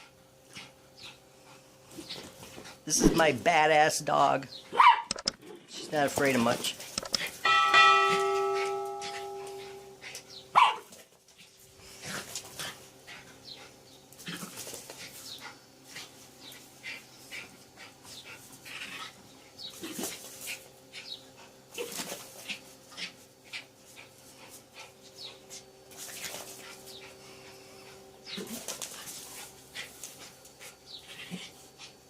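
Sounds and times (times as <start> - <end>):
dog barking and yipping: 4.7 - 5.2, 8.2 - 10.9
ringing tone: 7.4 - 10.0.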